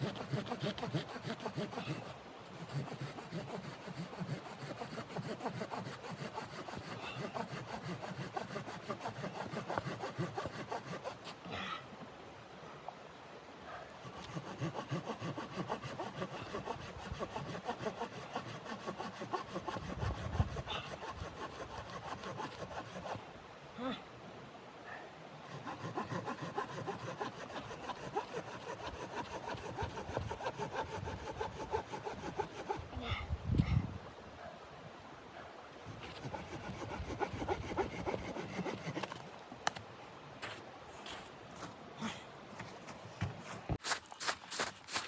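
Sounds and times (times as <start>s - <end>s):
hand saw cutting wood: 0.0s - 11.4s, 14.0s - 23.2s, 25.4s - 32.9s, 35.8s - 39.4s.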